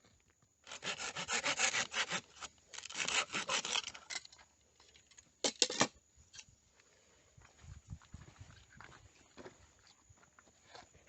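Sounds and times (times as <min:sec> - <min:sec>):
hand saw cutting wood: 0:00.6 - 0:04.0.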